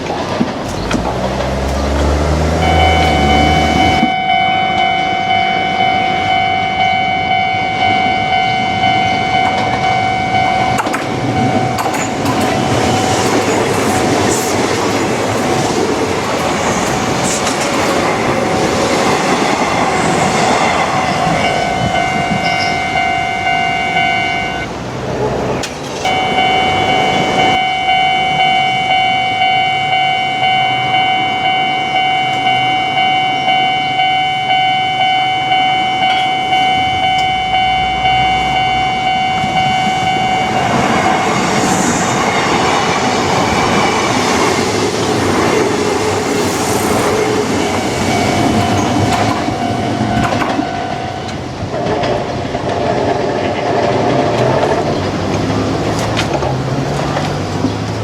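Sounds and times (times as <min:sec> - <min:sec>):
wheels clattering over rail joints: 0:00.0 - 0:04.5, 0:08.4 - 0:23.1, 0:24.7 - 0:27.2, 0:42.1 - 0:58.0
train rumbling past: 0:00.0 - 0:58.0
level crossing warning bell: 0:01.9 - 0:24.9, 0:26.0 - 0:53.1
steady tone ringing: 0:02.6 - 0:13.7, 0:18.0 - 0:24.8, 0:26.0 - 0:51.7.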